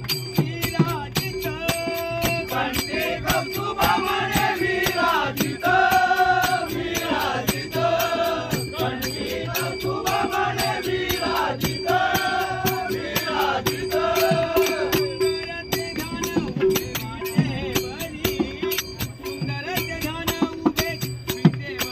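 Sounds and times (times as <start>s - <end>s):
hand cymbals striking: 0.0s - 21.9s
singers chanting: 2.2s - 15.4s.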